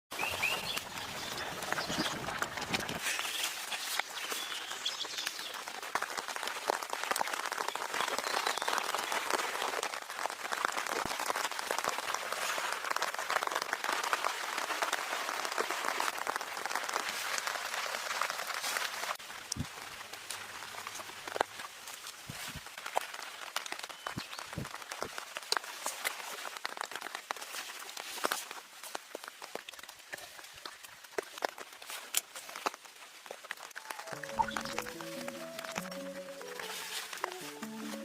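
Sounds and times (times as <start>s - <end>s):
rain pattering: 0.1s - 38.0s.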